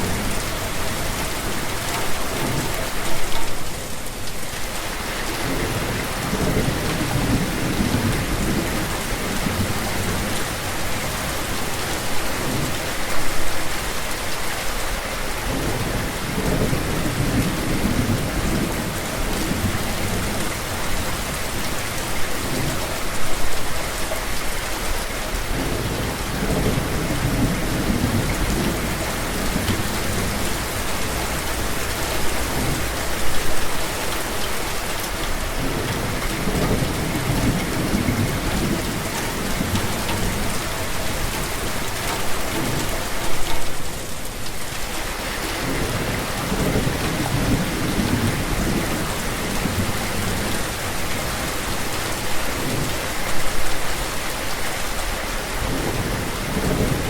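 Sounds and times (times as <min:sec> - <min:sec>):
steady rain: 0:00.0 - 0:57.0
thunder rumbling: 0:25.6 - 0:33.2.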